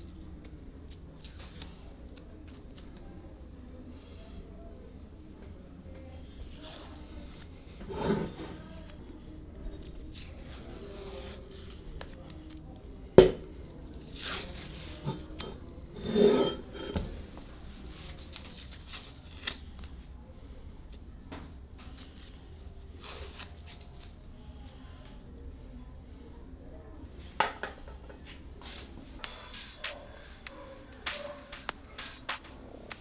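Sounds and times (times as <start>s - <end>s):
rubbing and scraping on workbench: 7.8s - 8.6s, 14.7s - 17.2s.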